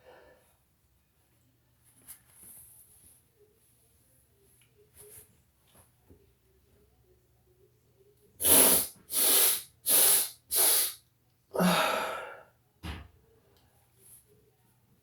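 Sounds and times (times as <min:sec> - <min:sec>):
person sneezing: 0:08.4 - 0:11.0.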